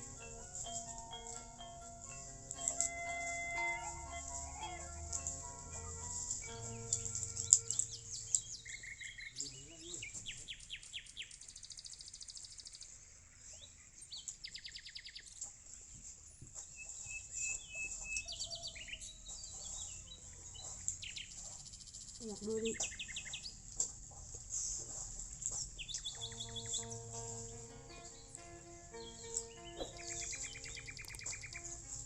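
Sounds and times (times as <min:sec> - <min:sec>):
music snippet: 0:00.0 - 0:08.4, 0:26.2 - 0:32.0
small birds chirping and trilling: 0:00.0 - 0:32.0.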